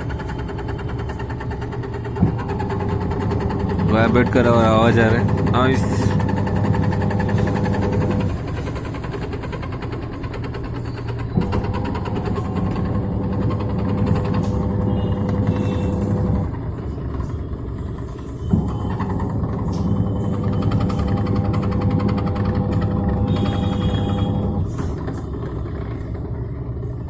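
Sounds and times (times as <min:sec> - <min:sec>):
fast rattle: 0:00.0 - 0:27.0
washing machine spinning: 0:00.0 - 0:27.0
washing machine knock: 0:02.0 - 0:08.3, 0:11.4 - 0:16.5, 0:18.5 - 0:24.8.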